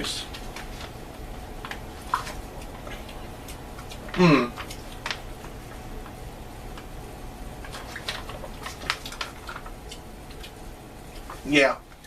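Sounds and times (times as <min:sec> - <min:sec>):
plastic pouch crinkling: 0:07.7 - 0:10.5.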